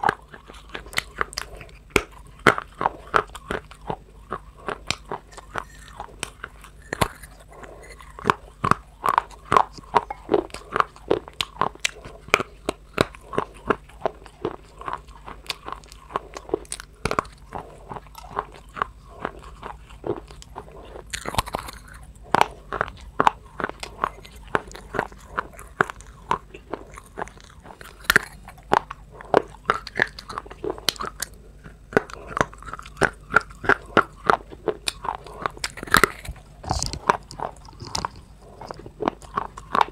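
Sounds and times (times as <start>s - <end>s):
crunchy food being chewed: 0.0s - 39.9s.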